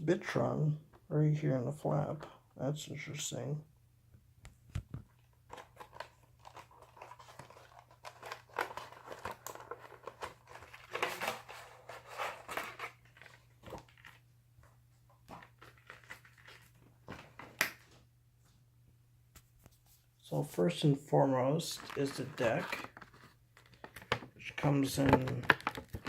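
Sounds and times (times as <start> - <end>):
packaging rustling and crinkling: 5.0 - 14.2, 15.3 - 18.0, 21.7 - 26.0.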